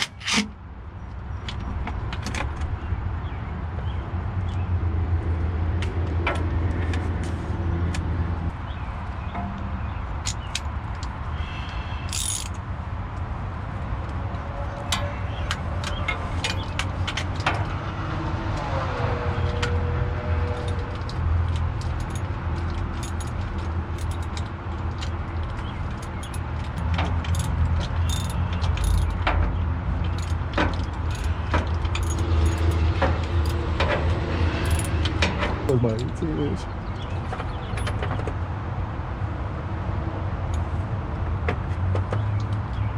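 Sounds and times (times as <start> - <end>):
metallic clinks of tools: 12.1 - 12.6, 27.2 - 29.2.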